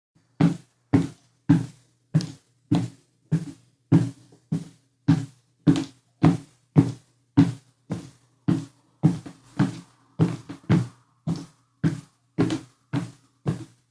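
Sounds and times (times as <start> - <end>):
footsteps climbing stairs: 0.4 - 13.8.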